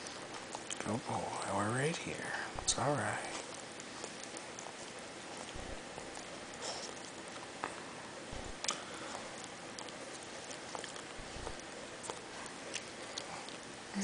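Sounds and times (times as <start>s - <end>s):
dog licking lips: 0.1s - 1.5s, 3.3s - 7.8s, 8.6s - 13.7s.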